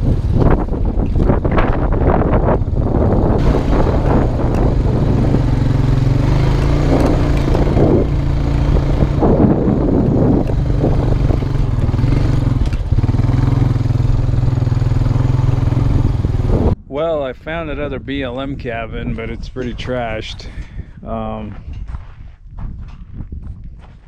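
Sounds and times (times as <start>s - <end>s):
atv engine running: 0.0s - 16.8s
rough noisy patches: 0.0s - 22.3s.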